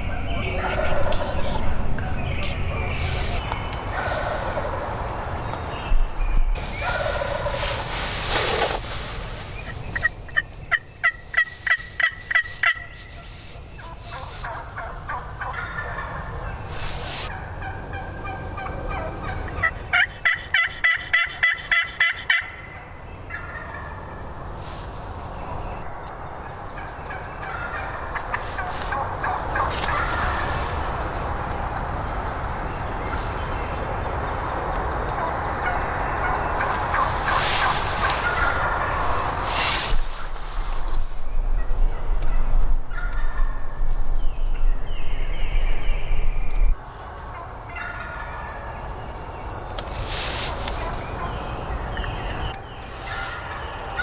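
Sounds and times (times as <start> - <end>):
turkey yelping: 0.2 - 5.2, 6.6 - 8.8, 9.6 - 16.4, 17.2 - 24.2, 26.8 - 32.1, 35.1 - 39.4, 47.3 - 49.8, 50.8 - 54.0.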